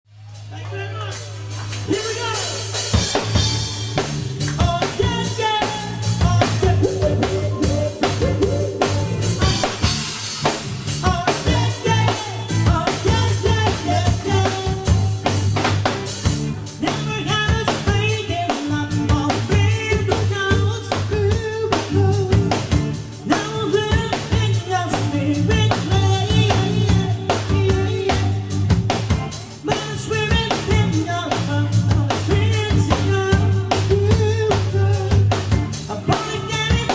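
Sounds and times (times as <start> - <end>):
bass: 0.0 - 36.9
drum kit beat: 1.1 - 36.9
person singing: 4.5 - 10.0, 11.0 - 15.3, 16.8 - 28.6, 29.5 - 35.3, 35.9 - 36.9.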